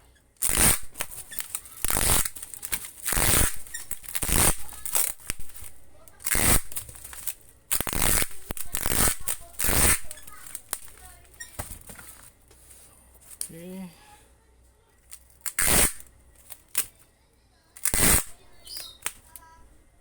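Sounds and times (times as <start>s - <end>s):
packing material rasping and tearing: 0.4s - 12.3s, 15.2s - 17.0s, 17.8s - 19.4s.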